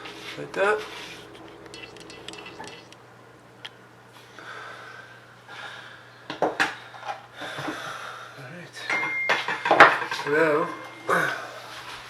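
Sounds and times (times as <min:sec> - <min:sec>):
metal rubbing: 0:00.0 - 0:03.0.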